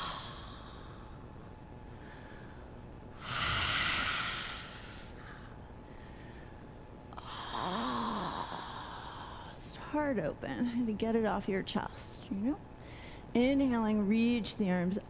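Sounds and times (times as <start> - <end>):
person exhaling forcefully: 3.2 - 5.0.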